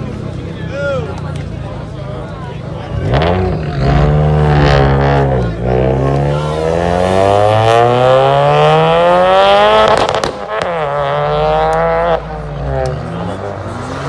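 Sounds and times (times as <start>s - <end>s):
car engine pulling hard: 0.0s - 14.0s.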